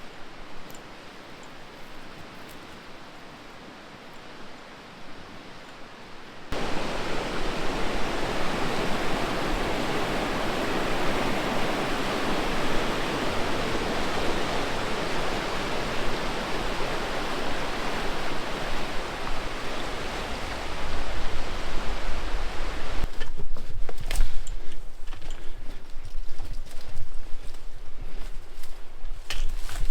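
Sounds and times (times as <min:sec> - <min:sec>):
river water rushing over rapids: 0:03.2 - 0:23.1.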